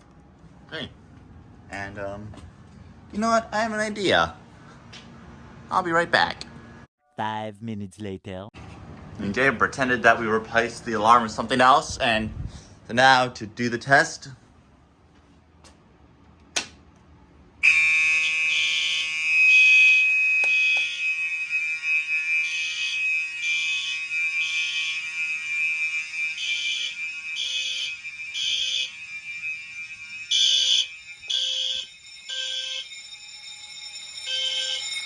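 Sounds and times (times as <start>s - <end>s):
pulsing alarm blasts: 17.6s - 35.0s
steady high-pitched alarm tone: 17.6s - 35.0s.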